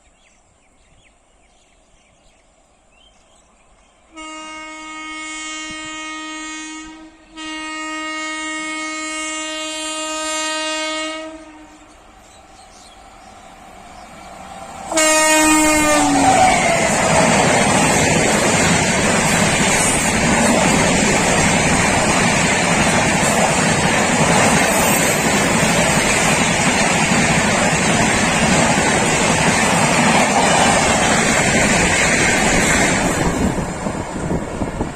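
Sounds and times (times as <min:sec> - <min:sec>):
train horn blast: 0:04.1 - 0:12.0, 0:14.9 - 0:18.0
train rushing past: 0:09.9 - 0:34.9.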